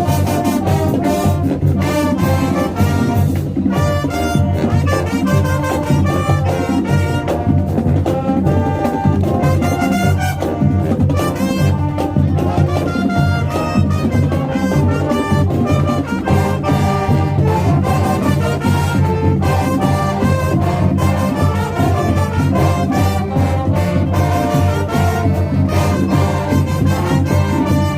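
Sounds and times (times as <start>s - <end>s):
drum beat: 0.0s - 27.9s
marching band playing: 0.0s - 27.9s.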